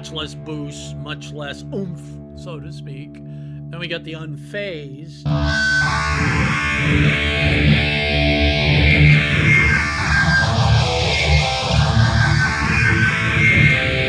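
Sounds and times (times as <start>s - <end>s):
electric guitar with phaser sweep: 5.2s - 14.0s.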